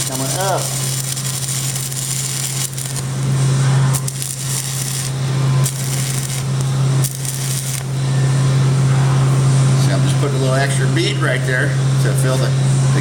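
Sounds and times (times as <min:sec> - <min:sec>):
welding arc crackling and hissing: 0:00.0 - 0:08.1
steady low hum: 0:00.0 - 0:13.0.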